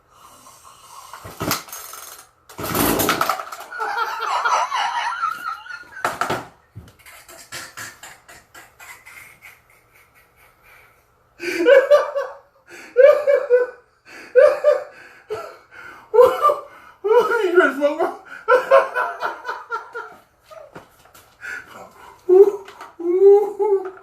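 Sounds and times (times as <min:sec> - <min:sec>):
person laughing hard: 0:03.7 - 0:06.2, 0:07.0 - 0:17.6.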